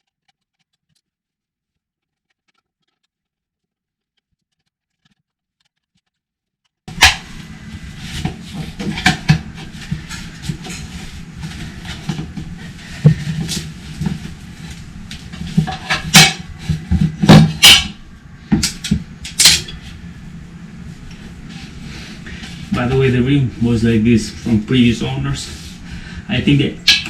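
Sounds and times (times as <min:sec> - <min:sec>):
steady low hum: 0:06.9 - 0:27.0.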